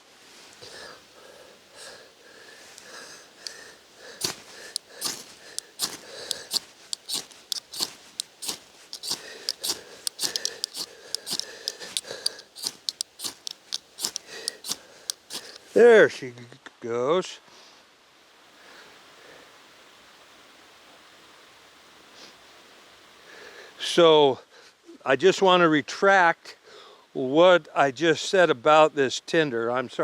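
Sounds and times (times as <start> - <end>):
puffs of breath blowing: 0.5 - 15.8
tinder crackling: 0.5 - 16.0.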